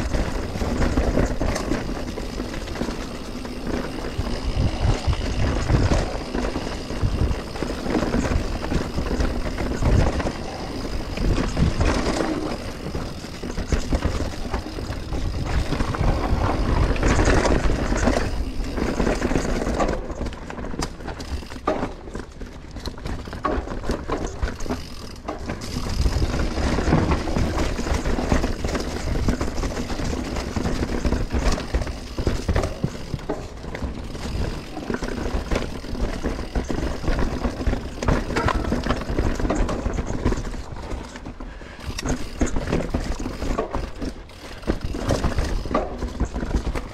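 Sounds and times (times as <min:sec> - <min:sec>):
bike rattling over bumps: 0:00.0 - 0:46.9
bike tyres on dirt: 0:00.0 - 0:46.9
wind buffeting microphone: 0:03.5 - 0:18.7.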